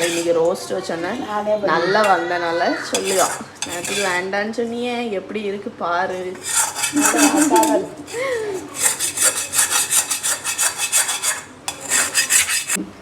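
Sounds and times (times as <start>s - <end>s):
rhythmic scraping strokes: 0.0s - 0.5s, 1.9s - 4.3s, 6.4s - 12.8s.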